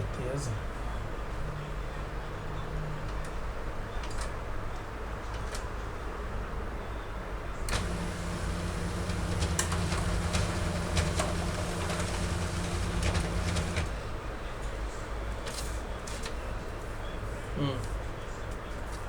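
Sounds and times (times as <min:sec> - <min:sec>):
laser printer motor drone: 0:07.7 - 0:14.2
paper feed clicks: 0:07.7 - 0:14.2.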